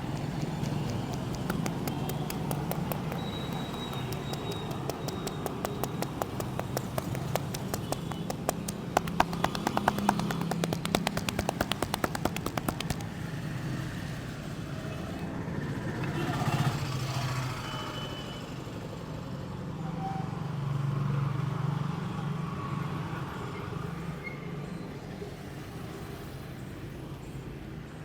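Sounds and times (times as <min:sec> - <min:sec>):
hands tapping and slapping head: 0:00.0 - 0:13.3
street traffic: 0:00.0 - 0:28.0.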